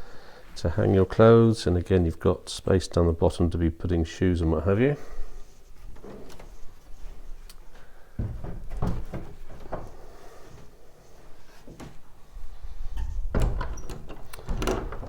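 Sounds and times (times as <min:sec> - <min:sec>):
heavy wooden bump: 0:08.1 - 0:10.2, 0:13.1 - 0:15.0
wooden wardrobe doors knocking: 0:08.2 - 0:10.1, 0:13.0 - 0:15.0.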